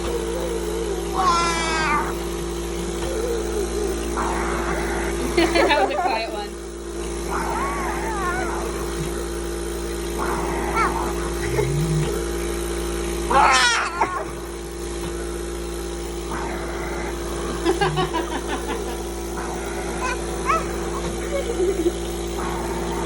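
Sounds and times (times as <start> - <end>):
child squealing and crying: 0.0 - 2.2, 7.4 - 8.8, 10.7 - 11.2, 13.3 - 14.4, 20.0 - 21.1
machine humming: 0.0 - 23.0.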